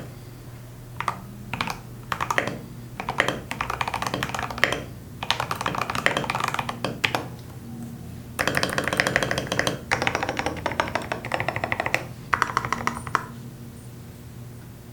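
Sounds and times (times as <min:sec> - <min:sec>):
mechanical keyboard typing: 0:01.0 - 0:07.5, 0:08.4 - 0:13.4.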